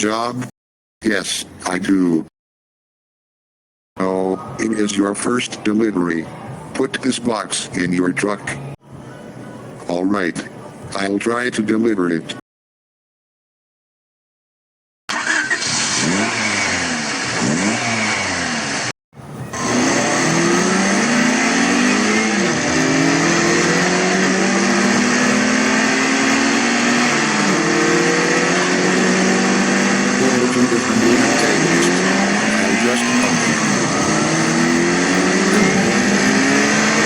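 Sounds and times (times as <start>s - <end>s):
vehicle engine revving and accelerating: 15.3s - 37.0s.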